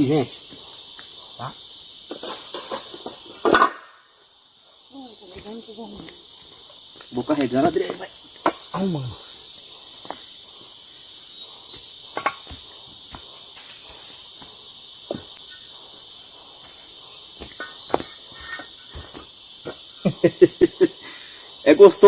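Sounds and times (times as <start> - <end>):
crickets chirping: 0.0 - 22.0
knocks and thuds: 15.0 - 15.3, 17.4 - 19.8.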